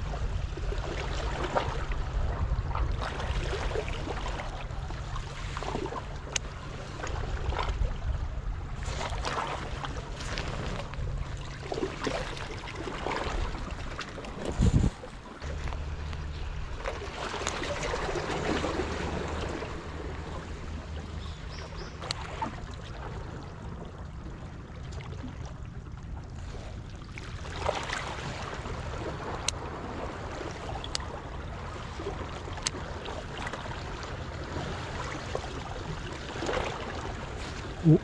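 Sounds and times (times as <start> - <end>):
seawater washing among boulders: 0.0 - 23.9, 24.5 - 38.0
low hum: 6.0 - 27.5.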